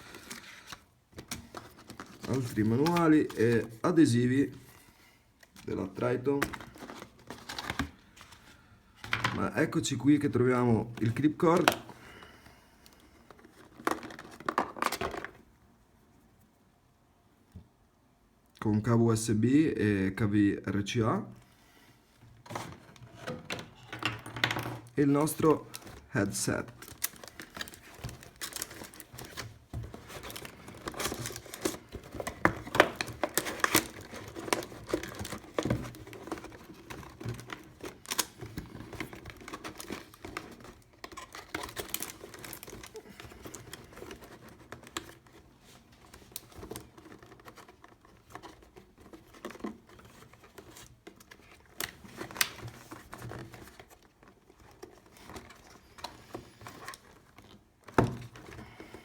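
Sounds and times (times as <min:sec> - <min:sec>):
packaging crinkling and rustling: 0:00.0 - 0:15.5, 0:22.4 - 0:59.0.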